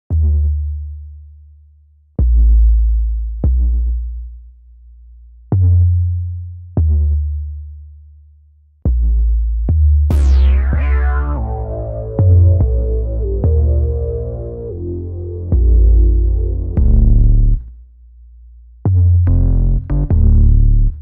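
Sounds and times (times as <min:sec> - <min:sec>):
deep electronic bass notes: 0:08.9 - 0:18.0, 0:18.7 - 0:21.0
synth notes: 0:10.1 - 0:17.6
falling synth sweep: 0:10.2 - 0:17.4.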